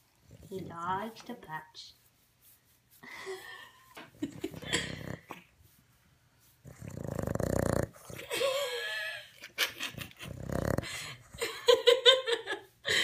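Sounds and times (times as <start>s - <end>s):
dog snoring: 4.6s - 5.3s, 6.6s - 8.2s, 10.2s - 10.9s.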